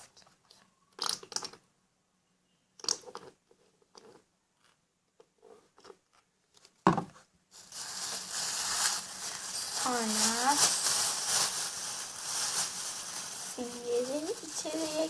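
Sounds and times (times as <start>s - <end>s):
loud crinkling noise: 7.5s - 15.0s
plastic bag crunching and squishing: 7.5s - 15.0s.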